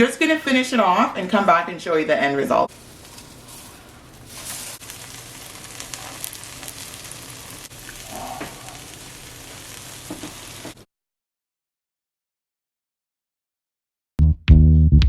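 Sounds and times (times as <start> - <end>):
pancakes sizzling in a pan: 2.7 - 10.8.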